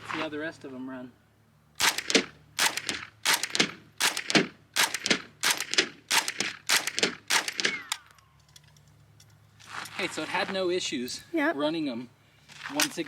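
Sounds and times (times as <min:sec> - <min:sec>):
rifle firing sharp shots: 0:01.8 - 0:08.0.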